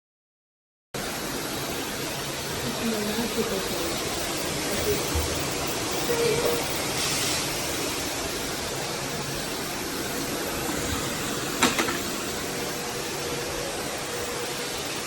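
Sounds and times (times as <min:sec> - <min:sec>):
faint motor hum: 0:01.0 - 0:15.0
vacuum cleaner suction: 0:01.4 - 0:15.0.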